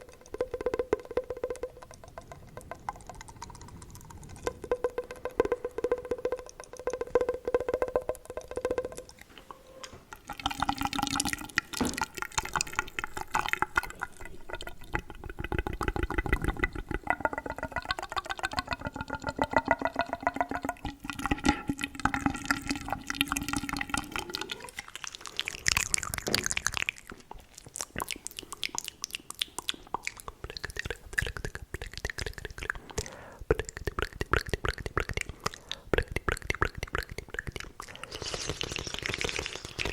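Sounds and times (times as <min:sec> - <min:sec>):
tongue clicks: 0:00.0 - 0:10.0, 0:23.3 - 0:39.9
lip smacks: 0:23.3 - 0:39.9.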